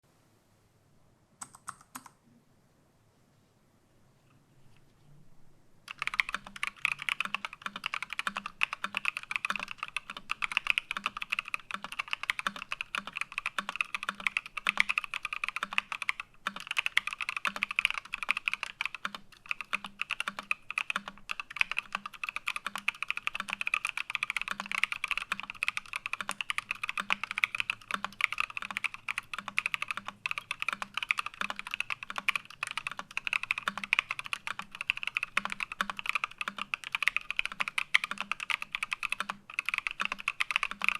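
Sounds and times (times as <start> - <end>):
mechanical keyboard typing: 1.4 - 2.2, 5.9 - 40.9.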